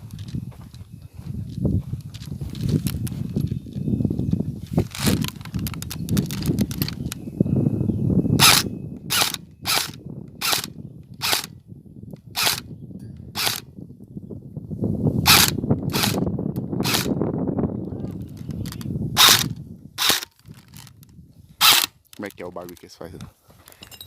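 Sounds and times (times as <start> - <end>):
low rumble of movement: 0.0 - 21.6
airsoft gun shots: 21.6 - 21.9.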